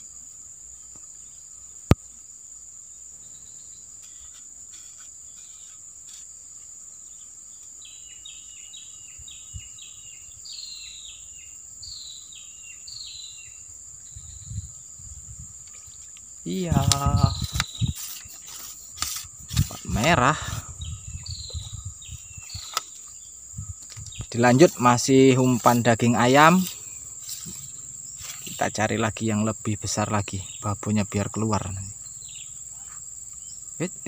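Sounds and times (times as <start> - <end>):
high-pitched insect drone: 0.0 - 34.0.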